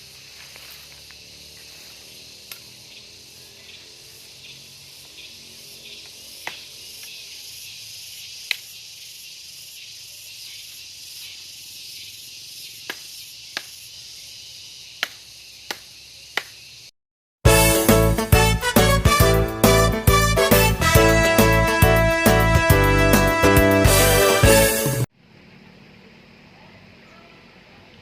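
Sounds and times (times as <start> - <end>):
high-pitched insect hiss: 0.0 - 16.9.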